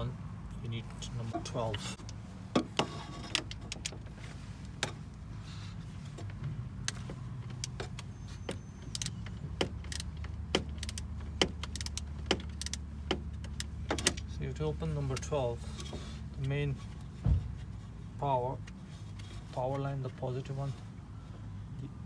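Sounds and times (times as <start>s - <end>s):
wrench clicking on metal: 8.8s - 14.2s.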